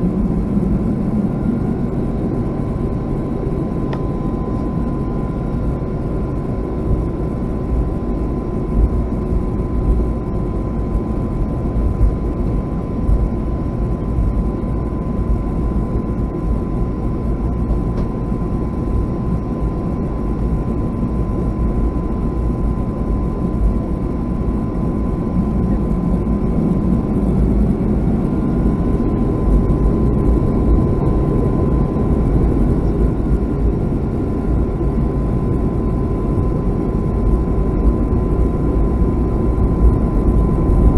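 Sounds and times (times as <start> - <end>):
jet engines rumbling with whine: 0.0 - 40.9.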